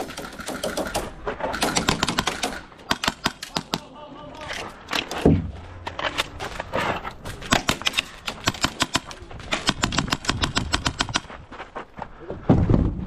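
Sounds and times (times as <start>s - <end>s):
airsoft guns firing: 0.0s - 3.9s, 7.5s - 11.3s.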